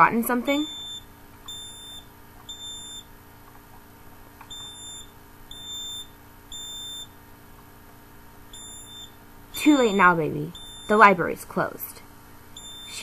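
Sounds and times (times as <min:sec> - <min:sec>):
smoke alarm beeping: 0:00.5 - 0:03.1, 0:04.5 - 0:07.2, 0:08.5 - 0:11.1, 0:12.6 - 0:13.0.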